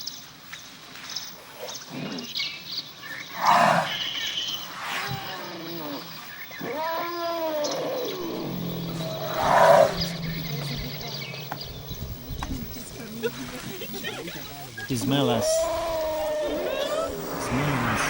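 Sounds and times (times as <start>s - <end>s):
loud harsh animal call: 3.3s - 18.0s
drawn-out rising and falling cries: 6.6s - 18.0s.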